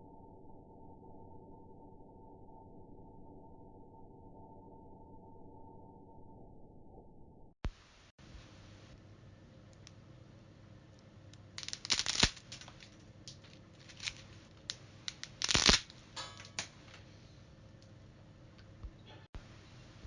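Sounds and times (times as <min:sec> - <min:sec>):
low steady hum: 0:07.7 - 0:20.0
scattered clicks: 0:11.0 - 0:17.1
handling rustles and scrapes: 0:11.6 - 0:17.4.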